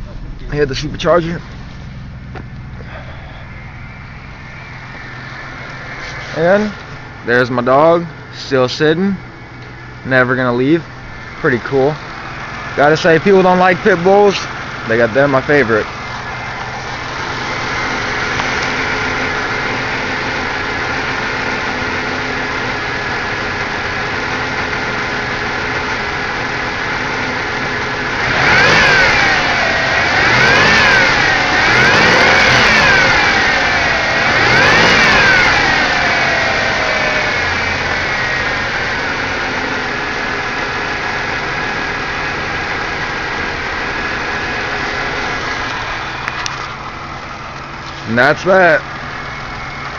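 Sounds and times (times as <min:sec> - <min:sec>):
car engine idling: 0:00.0 - 0:49.9
engine revving with whine: 0:00.0 - 0:49.9.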